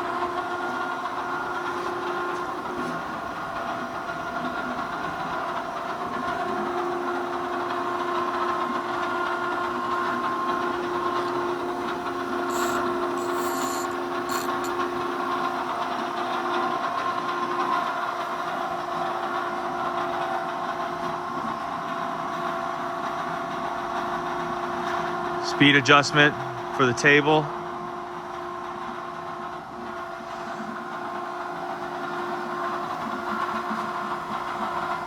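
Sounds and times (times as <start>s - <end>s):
surface grinder humming: 10.0s - 15.1s
short hissy bursts: 12.5s - 14.6s.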